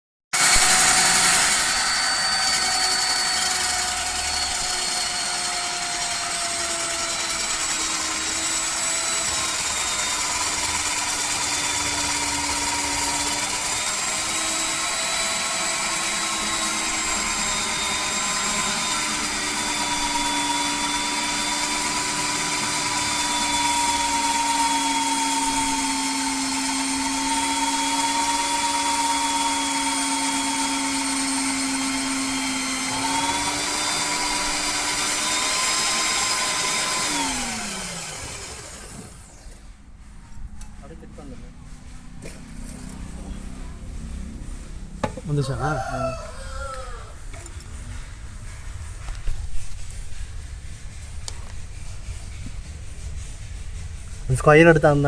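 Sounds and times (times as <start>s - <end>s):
core drill whining into concrete: 0.4s - 39.7s.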